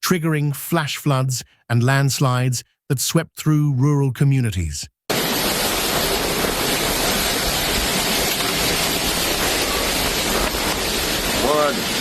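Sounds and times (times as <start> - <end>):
hurricane storm rushing: 5.1 - 12.0.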